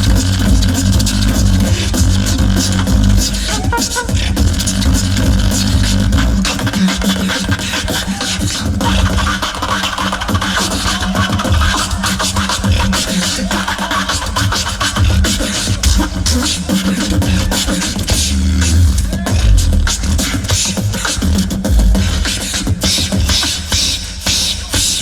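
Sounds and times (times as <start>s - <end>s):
hummed low tone: 0.0s - 3.4s
beatboxed deep bass line: 0.0s - 25.0s
beatboxing drum clicks and hi-hats: 0.0s - 25.0s.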